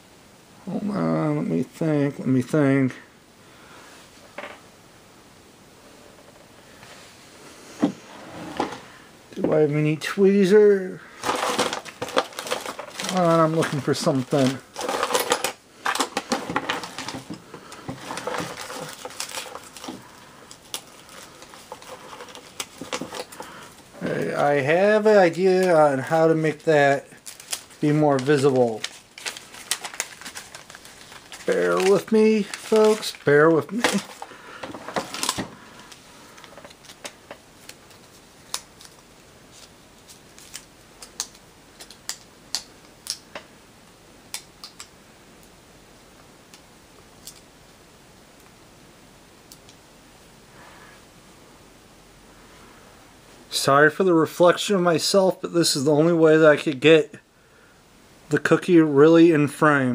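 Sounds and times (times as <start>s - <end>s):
rummaging through small hard objects: 11.2s - 23.8s, 26.5s - 35.5s.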